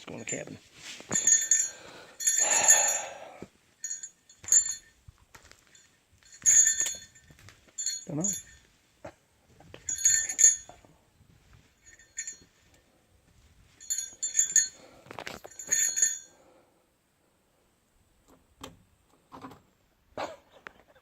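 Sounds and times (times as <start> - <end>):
light metallic jingling: 0.1 - 16.6.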